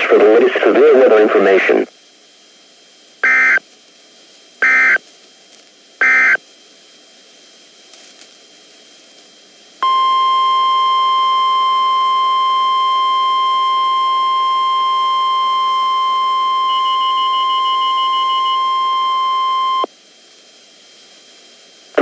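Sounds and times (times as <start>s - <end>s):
faint radio hiss: 0.0s - 22.0s
loud high alarm tone: 3.2s - 3.6s, 4.6s - 5.0s, 6.0s - 6.4s, 9.8s - 19.9s.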